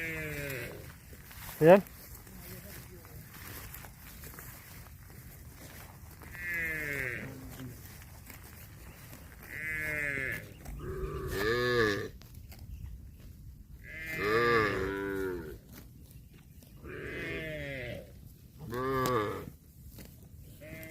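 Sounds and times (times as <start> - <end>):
cattle mooing: 6.3 - 7.7, 9.4 - 12.1, 13.8 - 15.6, 16.8 - 19.5.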